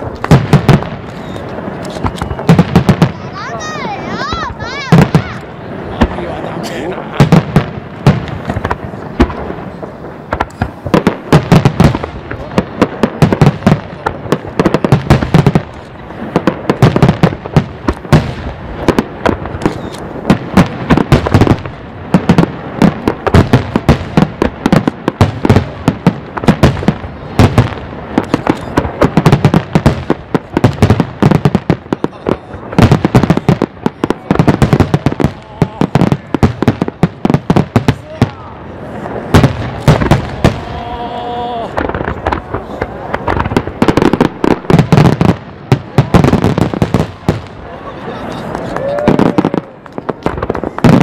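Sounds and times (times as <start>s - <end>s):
deep firework booms: 0.0s - 47.8s, 48.5s - 51.0s
fireworks sharp bangs: 0.0s - 51.0s.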